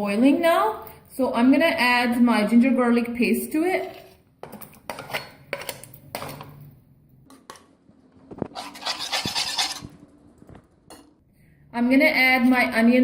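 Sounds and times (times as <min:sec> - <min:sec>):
spoon scraping a pan: 0:03.8 - 0:06.5, 0:08.3 - 0:10.0.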